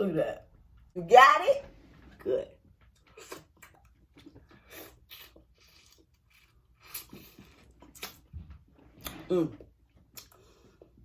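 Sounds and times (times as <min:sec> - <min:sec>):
clicks and scrapes of eating: 0:02.9 - 0:09.3.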